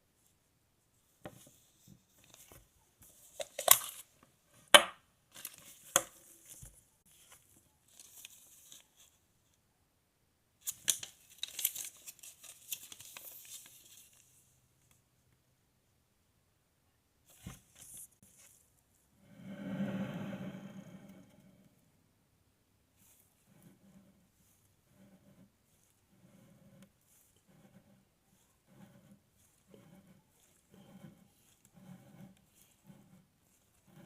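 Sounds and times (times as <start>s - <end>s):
dense crinkling: 10.6s - 14.4s.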